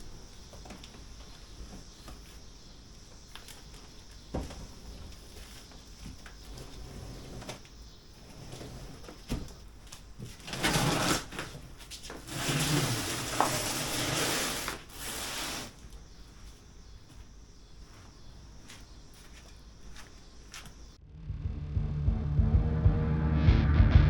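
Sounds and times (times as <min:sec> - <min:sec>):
rustling or scraping: 0:03.2 - 0:16.6.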